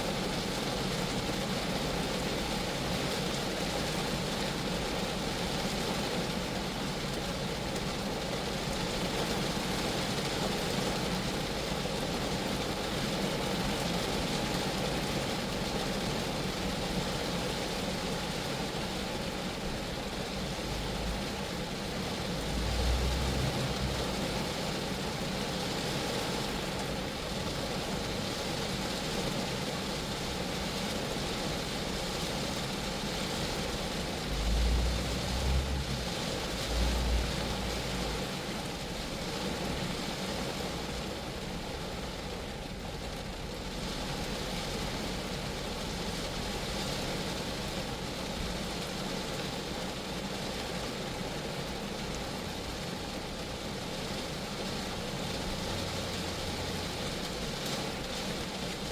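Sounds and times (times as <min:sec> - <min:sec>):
rain on a car body: 0:00.0 - 0:58.9
low rumbles: 0:34.0 - 0:38.5.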